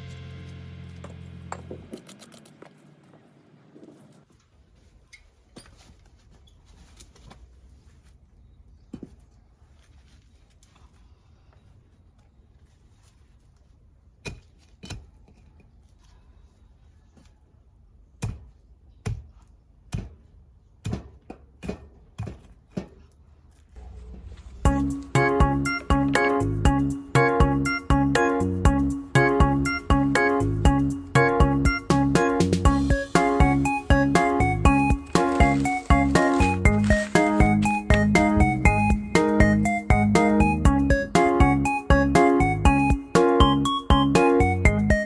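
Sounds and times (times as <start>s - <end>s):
music: 0.0s - 1.9s, 23.8s - 45.0s
low hum: 0.0s - 4.2s, 23.7s - 42.9s.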